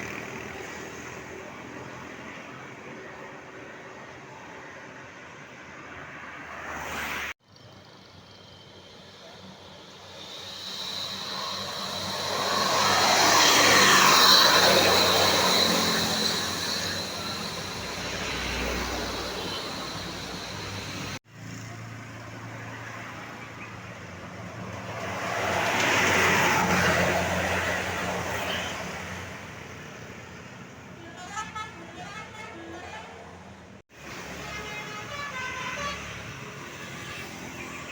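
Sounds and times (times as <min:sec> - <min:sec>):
vehicles passing by: 0:00.0 - 0:37.9.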